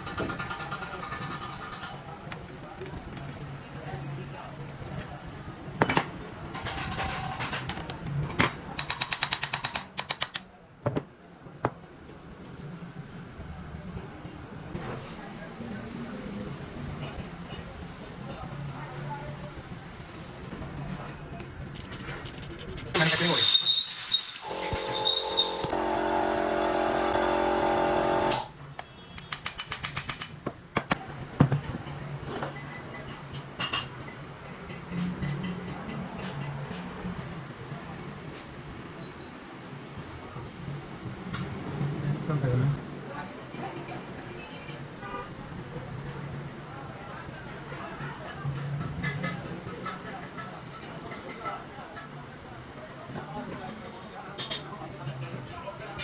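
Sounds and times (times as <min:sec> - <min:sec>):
machine motor whining: 0:23.9 - 0:28.5.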